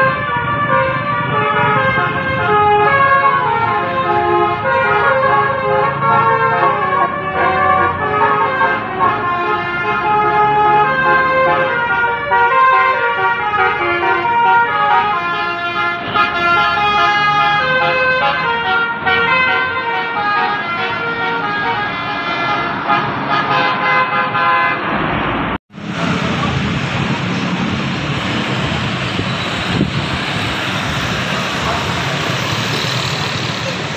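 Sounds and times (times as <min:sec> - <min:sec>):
multi-tone musical horns: 0:00.0 - 0:24.9.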